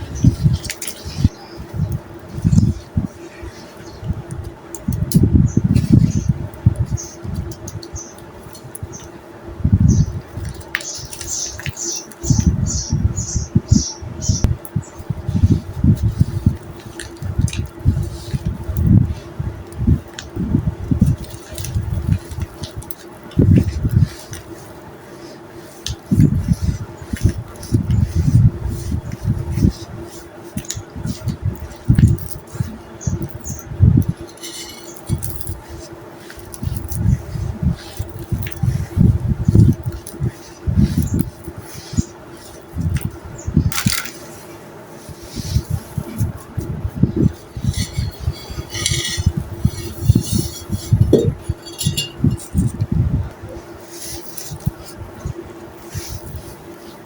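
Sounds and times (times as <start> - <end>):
dry soil crumbling by hand: 42.4 - 44.3
dry clay knocking and clinking: 47.7 - 52.6.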